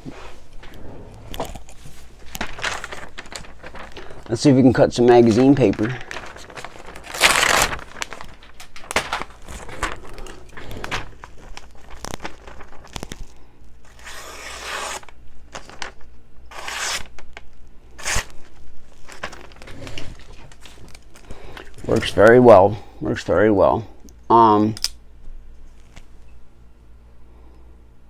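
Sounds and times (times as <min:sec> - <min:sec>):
paper rustling: 0:00.0 - 0:17.4, 0:18.0 - 0:22.4
knife slicing paper: 0:13.9 - 0:15.9, 0:16.5 - 0:17.2, 0:18.0 - 0:18.4.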